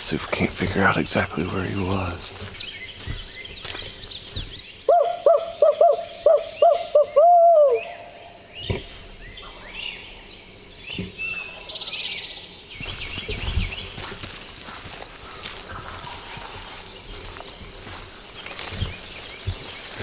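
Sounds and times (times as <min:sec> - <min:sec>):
high songbird calls: 0:00.0 - 0:20.0
owl hooting: 0:04.9 - 0:08.4.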